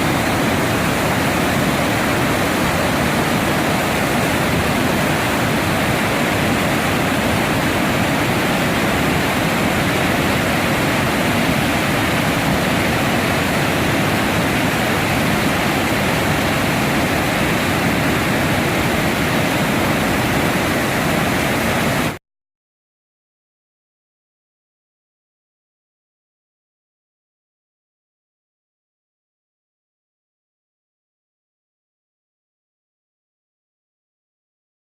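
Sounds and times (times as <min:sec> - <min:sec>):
stream water rushing: 0:00.0 - 0:22.2.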